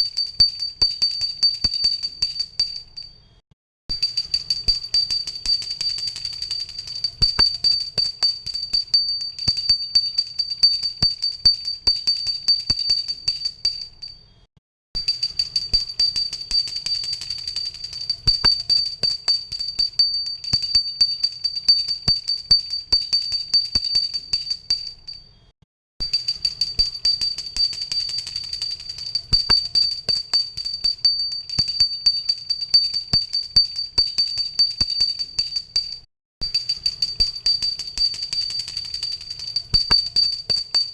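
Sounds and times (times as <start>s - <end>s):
hand bell ringing rapidly: 0.0s - 3.1s, 3.9s - 14.2s, 15.0s - 25.2s, 26.1s - 40.9s.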